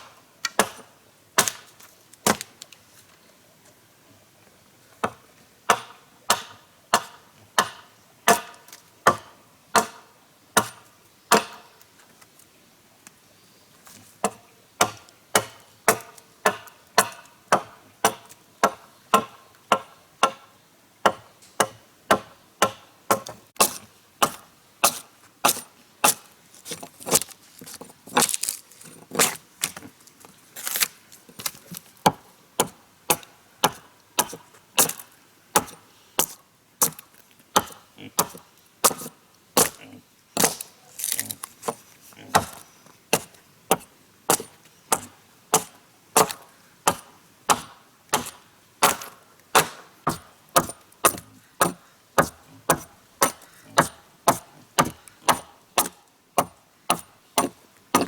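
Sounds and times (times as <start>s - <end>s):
blade chopping into wood: 0.5s - 2.5s, 5.7s - 11.6s, 14.2s - 20.4s, 21.1s - 27.2s, 32.0s - 39.8s, 40.4s - 58.0s.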